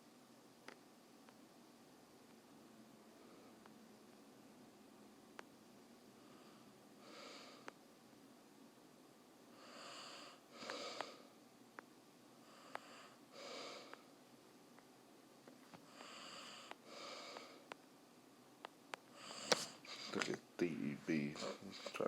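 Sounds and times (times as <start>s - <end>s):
person breathing: 6.2s - 7.7s, 9.5s - 11.4s, 12.4s - 14.1s, 15.8s - 17.7s, 19.1s - 20.3s, 21.0s - 22.0s.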